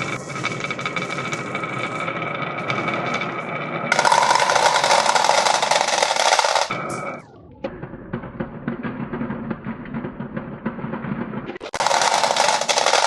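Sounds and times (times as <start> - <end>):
marbles rattling down tracks: 3.9 - 6.7, 11.7 - 13.0.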